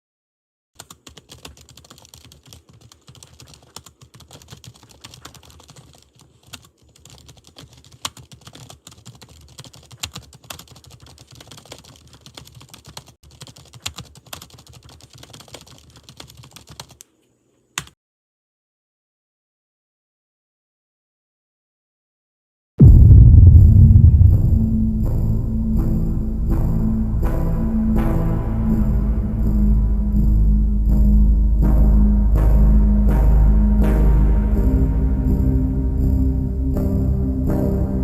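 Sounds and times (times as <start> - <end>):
irregular clicking and crackling: 0.8 - 17.1
low hum: 22.8 - 38.0.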